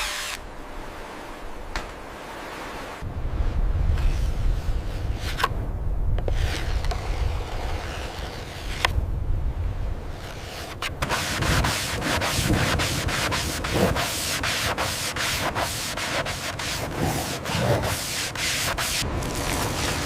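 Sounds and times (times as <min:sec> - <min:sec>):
rapid scraping strokes: 0:10.1 - 0:20.0.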